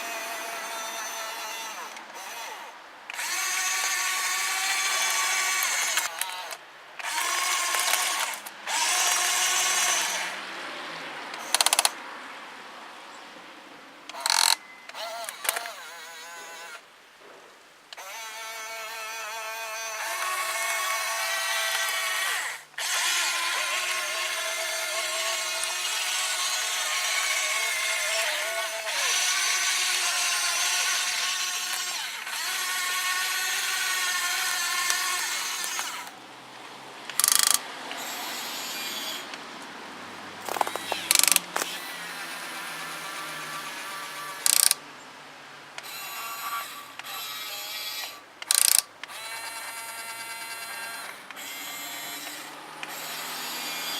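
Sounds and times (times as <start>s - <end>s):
short bursts of motor noise: 0.0s - 10.4s, 11.3s - 12.0s, 14.1s - 16.9s, 18.0s - 36.2s, 37.1s - 39.4s, 40.4s - 44.8s, 45.8s - 53.9s
electric motors whining: 0.0s - 10.6s, 11.3s - 12.0s, 14.1s - 16.9s, 17.9s - 36.2s, 37.1s - 39.7s, 40.4s - 44.8s, 45.8s - 53.9s.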